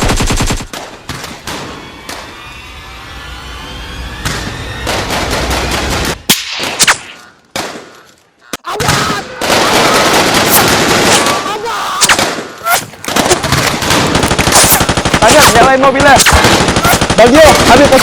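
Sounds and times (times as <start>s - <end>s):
rapid automatic gunfire: 0.0s - 0.8s, 9.4s - 11.5s, 13.1s - 18.0s
single gunshots: 8.8s - 18.0s.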